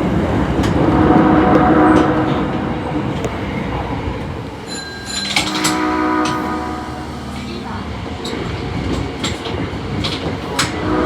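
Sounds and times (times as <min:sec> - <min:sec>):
subway train rumbling past: 0:00.0 - 0:11.0
steady horn tone: 0:04.7 - 0:08.9.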